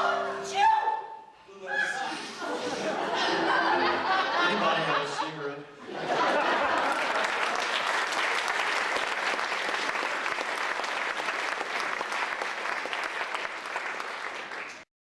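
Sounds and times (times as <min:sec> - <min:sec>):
audience applauding: 0:06.2 - 0:14.9.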